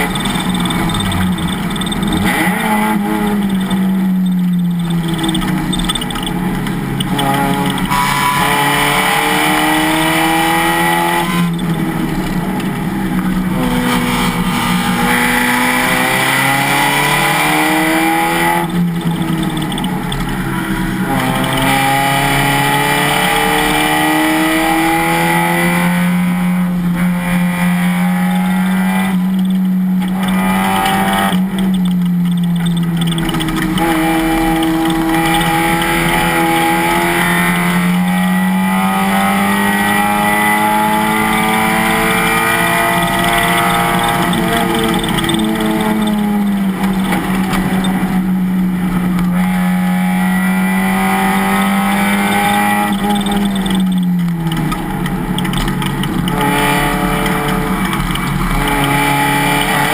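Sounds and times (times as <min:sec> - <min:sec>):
race car engine at full throttle: 0:00.0 - 0:59.9.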